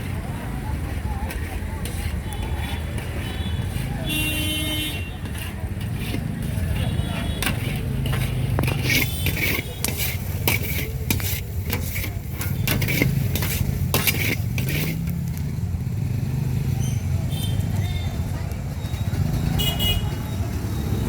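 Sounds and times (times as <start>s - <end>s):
metal spoon scraping metal pan: 0.0s - 15.4s
low traffic engine hum: 0.0s - 21.0s.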